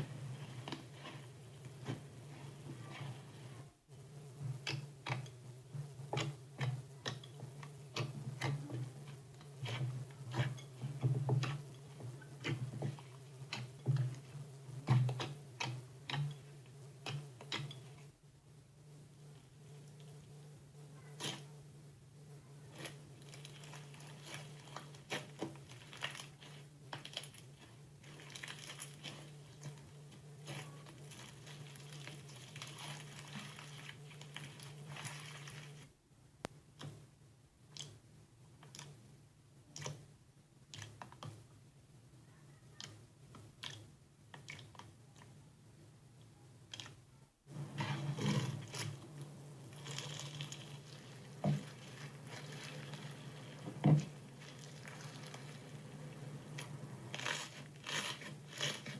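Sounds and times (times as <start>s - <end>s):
low steady hum: 45.0s - 58.9s.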